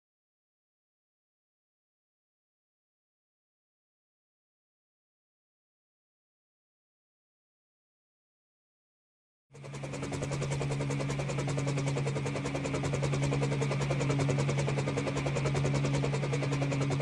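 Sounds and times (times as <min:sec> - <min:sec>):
helicopter rotor chop: 0:09.6 - 0:17.0.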